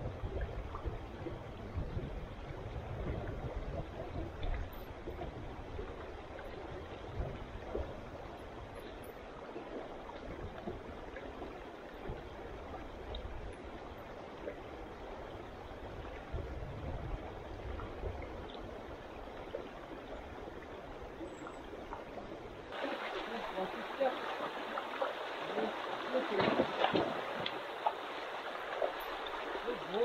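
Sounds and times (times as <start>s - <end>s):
stream flowing over rocks: 0.0s - 16.6s, 17.2s - 30.0s.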